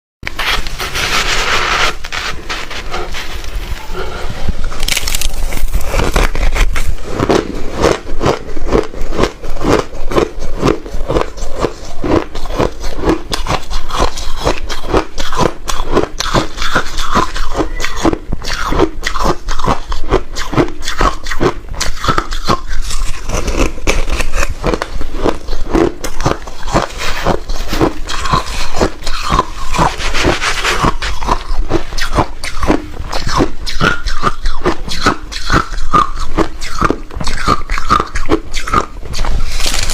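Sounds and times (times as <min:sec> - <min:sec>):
rapid crunching: 0:00.2 - 0:39.9.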